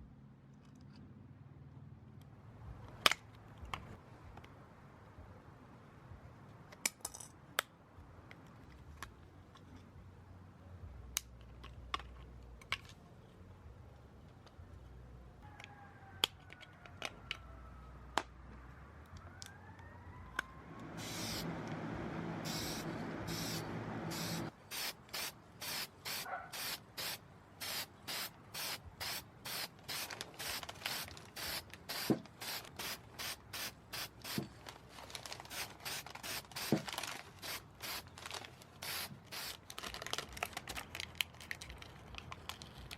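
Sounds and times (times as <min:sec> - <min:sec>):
fast hissing strokes: 0:21.0 - 0:21.6, 0:22.2 - 0:34.4
steady hiss: 0:21.0 - 0:21.6, 0:22.2 - 0:34.6.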